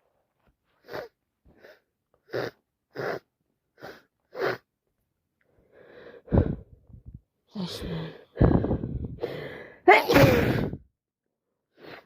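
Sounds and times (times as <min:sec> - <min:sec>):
person sneezing: 0:09.9 - 0:10.8.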